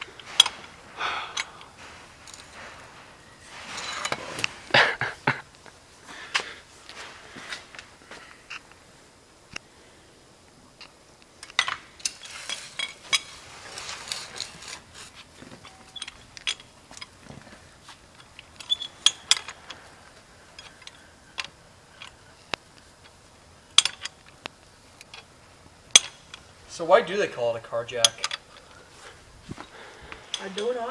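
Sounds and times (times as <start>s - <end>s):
metal car jack clicking: 18.2s - 19.8s, 23.7s - 24.2s, 25.9s - 26.5s.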